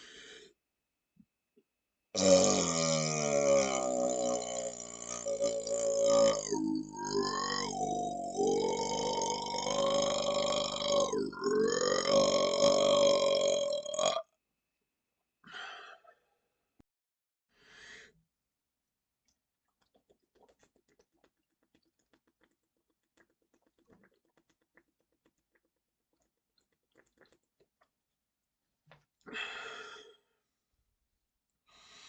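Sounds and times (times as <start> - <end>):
man belching: 2.2 - 14.2.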